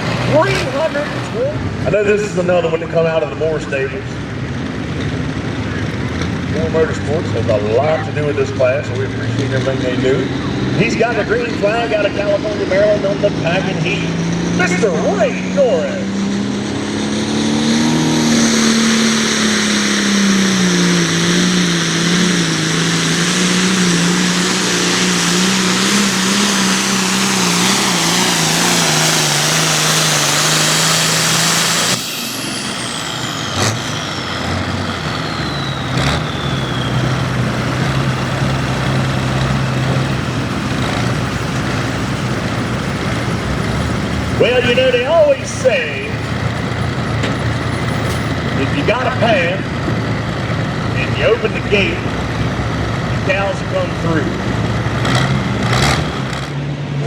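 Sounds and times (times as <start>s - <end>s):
tractor diesel engine at full throttle: 0.0s - 57.0s
high whine: 17.0s - 50.1s.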